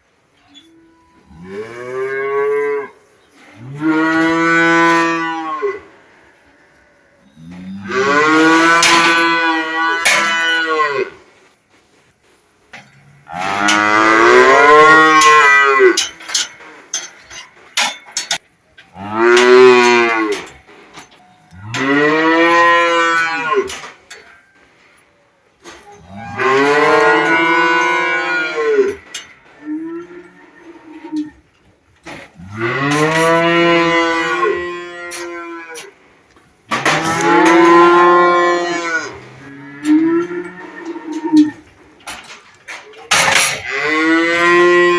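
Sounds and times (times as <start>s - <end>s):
cow mooing: 26.0s - 29.0s, 43.2s - 44.9s.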